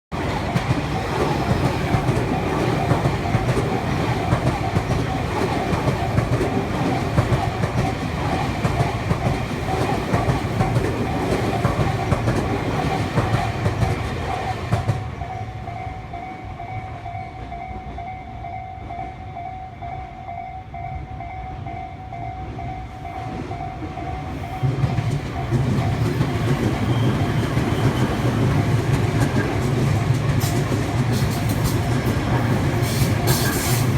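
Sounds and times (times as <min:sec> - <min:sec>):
two-tone crossing warning bell: 0:00.2 - 0:33.9
train wheels clattering over rail joints: 0:00.3 - 0:15.1, 0:24.6 - 0:33.9.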